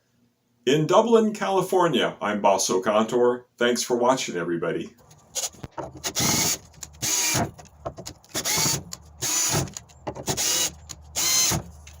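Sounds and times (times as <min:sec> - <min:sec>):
cordless drill motor whining: 0:05.4 - 0:07.6, 0:08.3 - 0:12.0.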